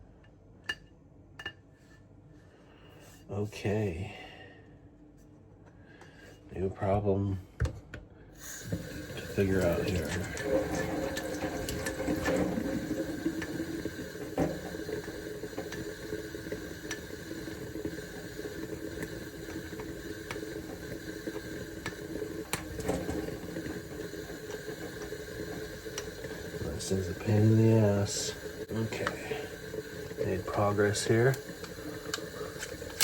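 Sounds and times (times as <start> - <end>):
tap water running into sink: 8.4 - 33.0.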